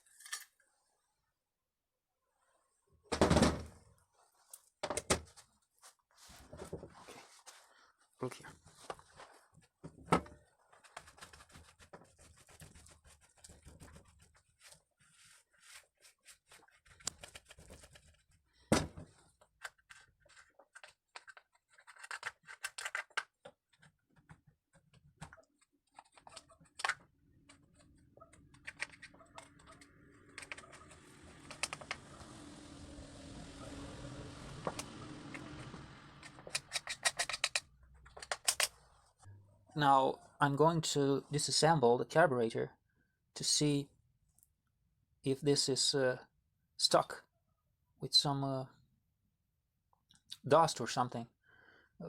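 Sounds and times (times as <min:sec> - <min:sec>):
tools and parts clicking and scraping: 0:00.0 - 0:00.6, 0:19.4 - 0:23.9, 0:24.8 - 0:32.0, 0:36.2 - 0:38.9.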